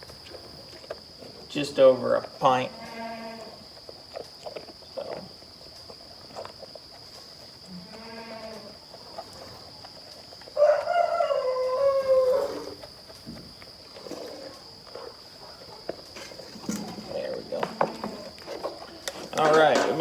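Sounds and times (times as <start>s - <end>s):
goat bleating: 2.7s - 3.5s, 7.8s - 8.7s.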